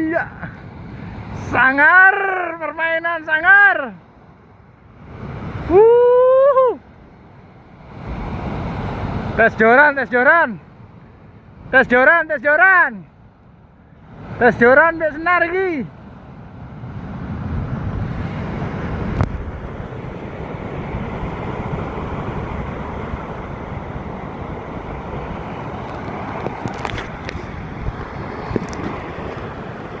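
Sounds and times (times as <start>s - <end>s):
wind buffeting microphone: 15.9s - 30.0s.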